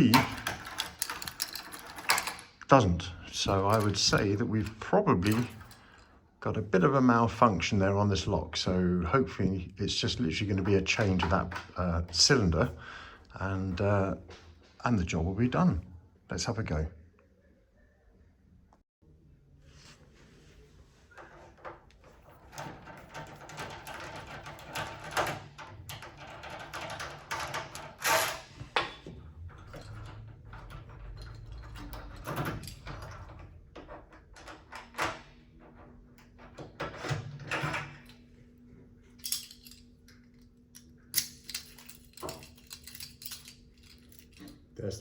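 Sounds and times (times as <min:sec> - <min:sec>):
keys and tools rattling: 0:00.0 - 0:06.2, 0:21.2 - 0:38.4, 0:39.0 - 0:45.0.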